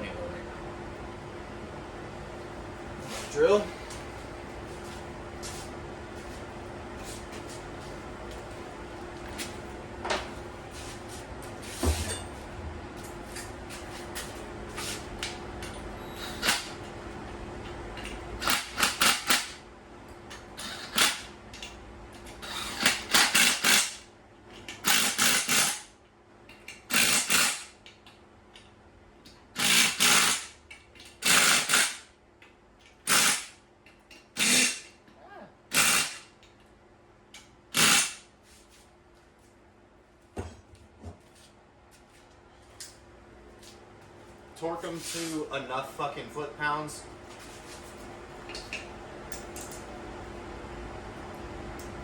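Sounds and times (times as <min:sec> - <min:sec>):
steady hum: 0:00.0 - 0:24.1, 0:33.0 - 0:52.0
power drill driving bolts: 0:20.6 - 0:21.3, 0:22.4 - 0:24.0, 0:24.7 - 0:25.8, 0:26.8 - 0:27.7, 0:29.6 - 0:30.5, 0:31.2 - 0:32.1, 0:33.0 - 0:33.6, 0:34.3 - 0:34.9, 0:35.7 - 0:36.3, 0:37.7 - 0:38.2.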